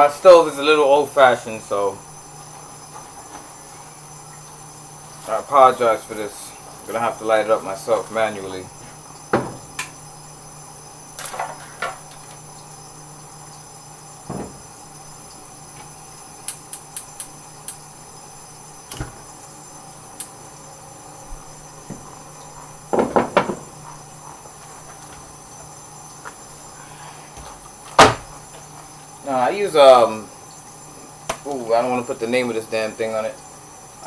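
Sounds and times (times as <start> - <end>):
knocks on stove: 9.3 - 9.9, 14.3 - 14.6, 22.9 - 23.7, 28.0 - 28.3
gas stove igniter clicks: 16.4 - 17.8.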